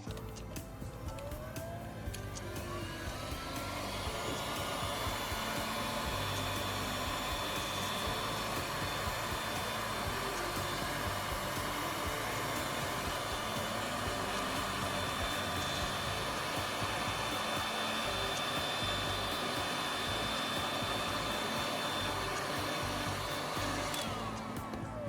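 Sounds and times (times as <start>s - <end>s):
faint high whine: 0.0s - 25.0s
hot-air blower running: 0.0s - 25.0s.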